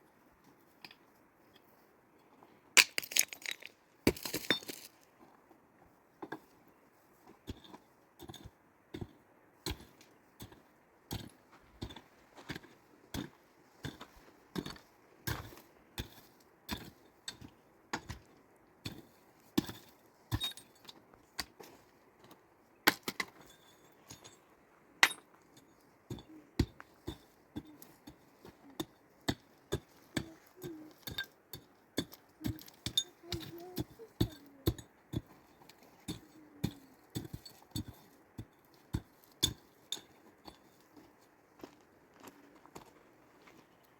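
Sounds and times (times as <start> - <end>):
hand tool striking hard material: 36.1 - 40.6.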